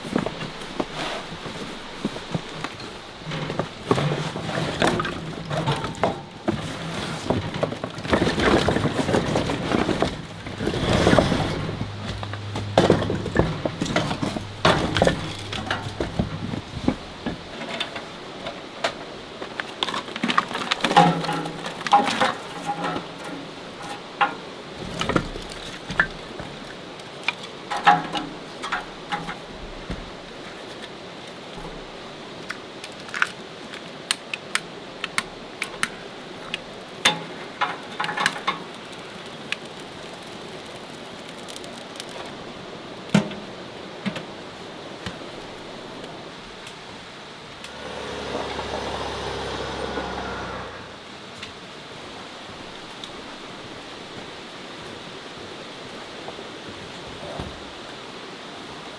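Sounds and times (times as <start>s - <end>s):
objects clicking and clinking: 2.3s - 18.0s.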